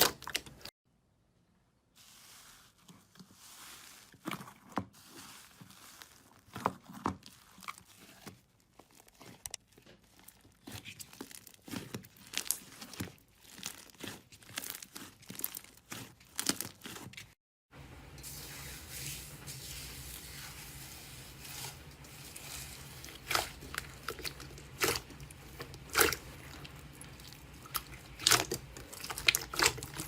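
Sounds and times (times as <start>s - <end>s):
slime crackling and popping: 7.2s - 17.0s, 23.1s - 30.0s.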